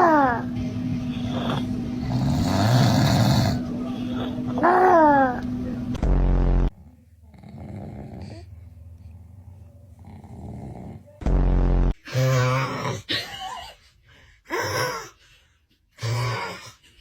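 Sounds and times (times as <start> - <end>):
man snoring loudly: 1.2 - 4.4.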